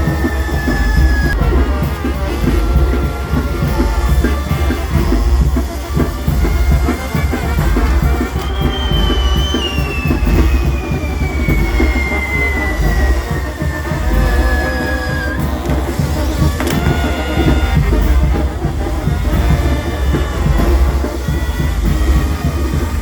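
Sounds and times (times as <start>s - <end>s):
high whistle sliding down: 0.0s - 1.5s, 8.1s - 17.8s
loud music with drums: 0.0s - 23.0s.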